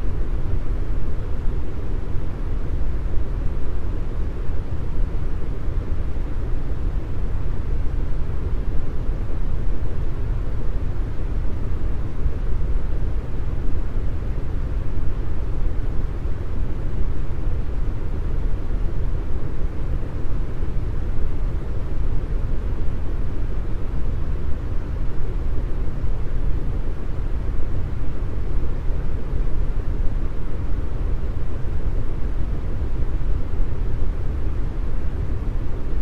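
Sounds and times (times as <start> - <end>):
brown noise hiss: 0.0 - 36.0.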